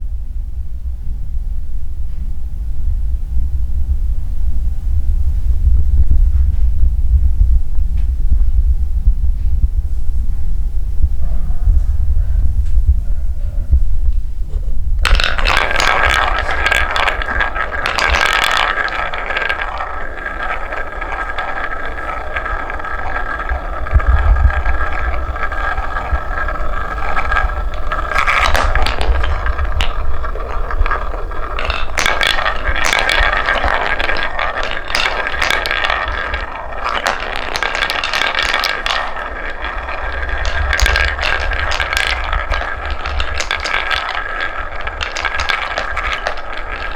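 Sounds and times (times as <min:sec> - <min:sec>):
low rumble: 0:00.0 - 0:46.9
wooden balls rolling on wooden track: 0:14.0 - 0:46.9.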